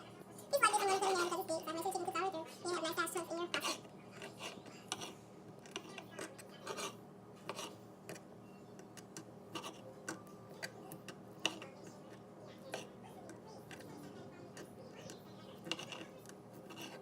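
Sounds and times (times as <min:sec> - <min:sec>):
knife cutting on cutting board: 0:03.5 - 0:08.2, 0:15.6 - 0:17.0.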